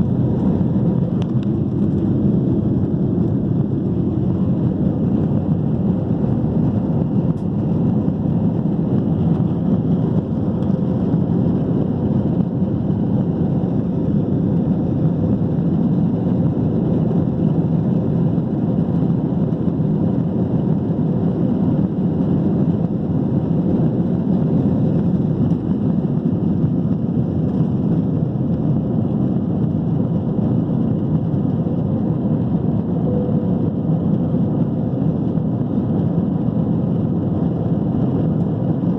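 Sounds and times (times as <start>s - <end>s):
airplane cabin rumble: 0.0s - 38.9s.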